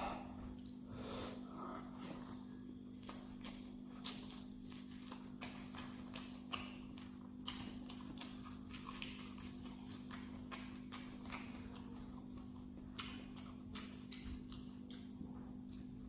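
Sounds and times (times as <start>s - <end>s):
steady low hum: 0.0s - 16.0s
wet chewing and mouth clicks: 2.0s - 16.0s.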